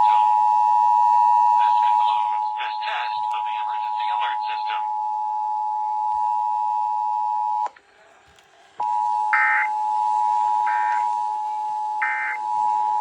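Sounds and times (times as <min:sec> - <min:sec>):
data bursts: 0:08.8 - 0:13.0
two-tone alert signal: 0:12.0 - 0:13.0.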